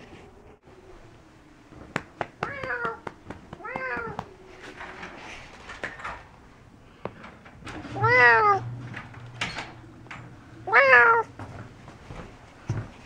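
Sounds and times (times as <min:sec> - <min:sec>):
cat meowing: 0:02.4 - 0:03.0, 0:03.6 - 0:04.4, 0:07.8 - 0:08.8, 0:10.6 - 0:11.4.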